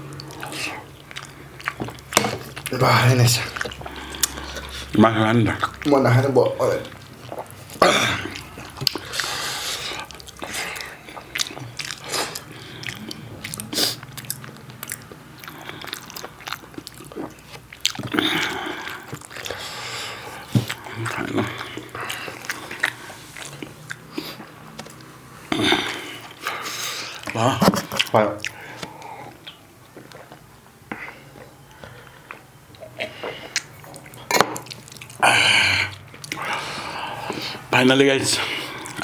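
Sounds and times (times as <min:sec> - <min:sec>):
chewing and mouth smacking: 0:00.0 - 0:35.2, 0:35.8 - 0:37.6, 0:38.2 - 0:39.0.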